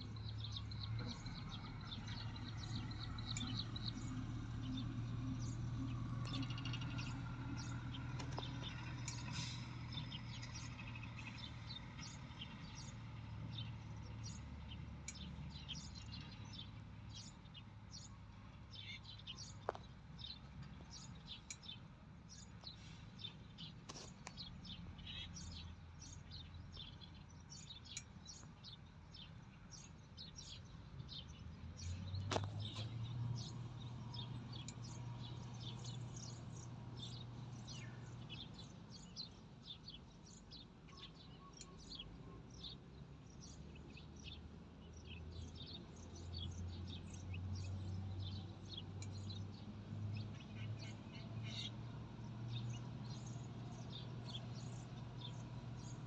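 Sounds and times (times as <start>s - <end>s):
small birds chirping: 0.0s - 56.0s.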